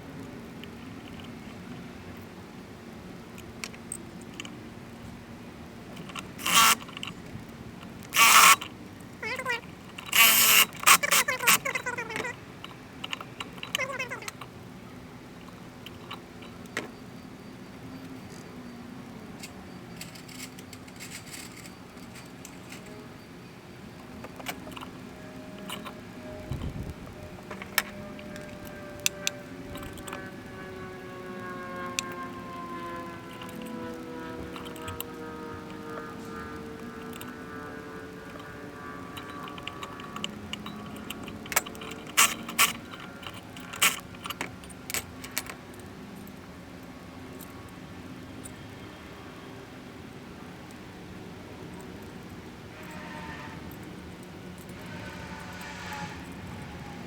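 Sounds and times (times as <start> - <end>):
faint steady hum: 0.0 - 57.0
hand tools clicking and rattling: 0.6 - 1.8, 5.9 - 14.6, 18.0 - 23.2, 23.8 - 47.8
metal tools clinking: 18.2 - 23.2, 35.7 - 46.4.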